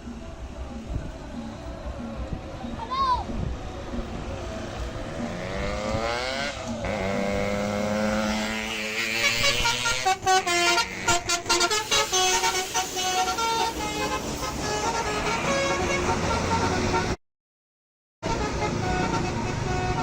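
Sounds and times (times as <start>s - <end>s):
bus musical horn: 5.4s - 17.2s, 18.2s - 20.0s.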